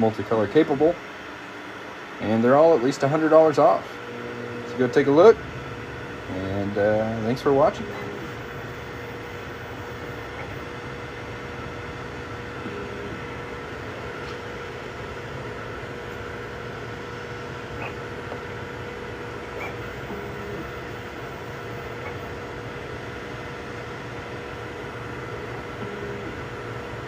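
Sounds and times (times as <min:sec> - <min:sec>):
cooling fans whirring: 0:00.0 - 0:27.0
steady motor tone: 0:00.0 - 0:27.0.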